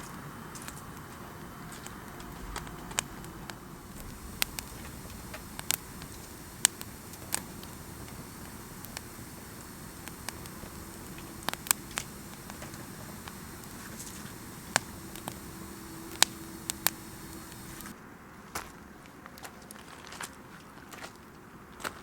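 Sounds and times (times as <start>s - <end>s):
low background noise: 0.0s - 19.3s
sharp crackles and clicks: 2.6s - 17.9s.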